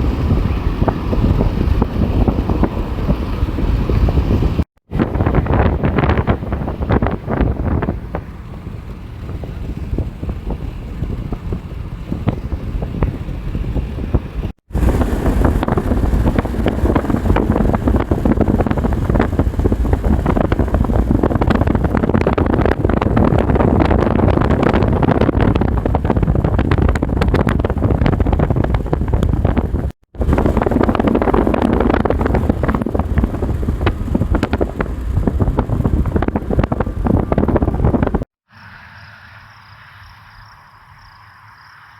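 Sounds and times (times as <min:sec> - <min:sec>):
wind buffeting microphone: 0:00.0 - 0:38.3.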